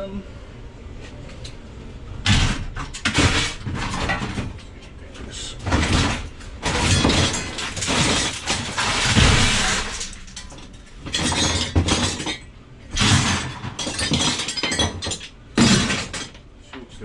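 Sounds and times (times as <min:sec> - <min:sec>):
scrap items clattering together: 0:02.3 - 0:04.8, 0:05.5 - 0:16.3.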